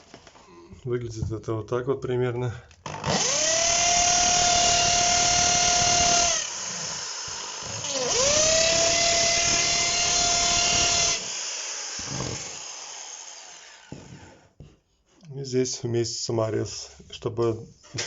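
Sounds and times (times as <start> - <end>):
electric drill whining: 2.8 - 14.2.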